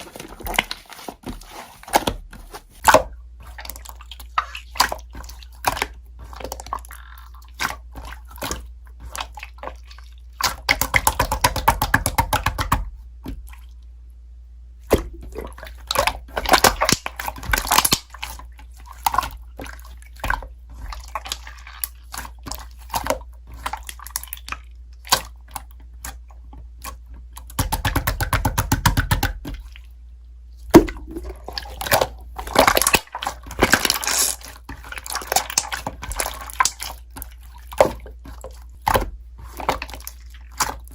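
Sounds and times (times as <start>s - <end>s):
slime squished by hand: 14.8s - 29.9s, 30.6s - 40.9s.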